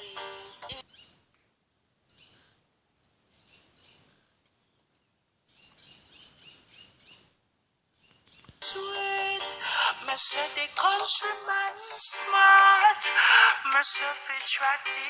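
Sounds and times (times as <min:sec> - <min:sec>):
faint bird chirps: 0:00.8 - 0:08.6.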